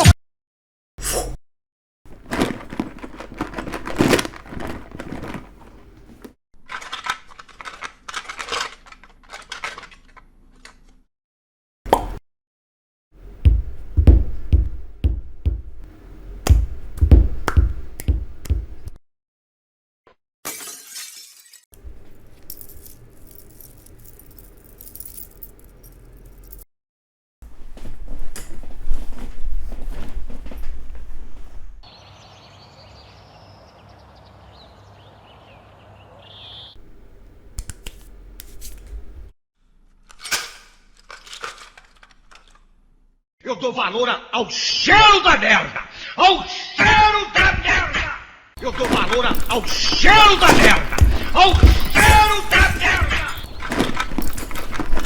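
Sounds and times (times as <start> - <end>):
glass breaking and shattering: 20.4 - 21.7, 48.6 - 55.0
clinks and rattles: 22.1 - 26.6, 40.1 - 42.7, 48.6 - 55.0
heavy knocks and crashes: 48.6 - 55.0.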